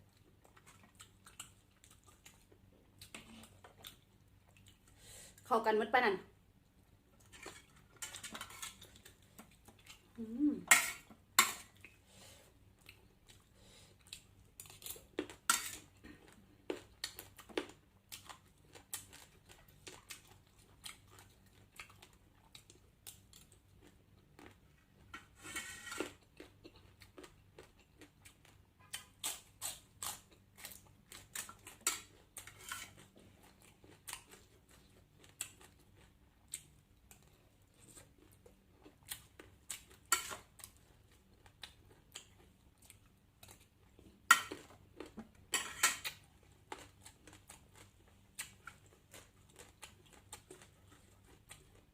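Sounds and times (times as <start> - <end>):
soft chewing: 0.0 - 5.5, 6.6 - 51.9.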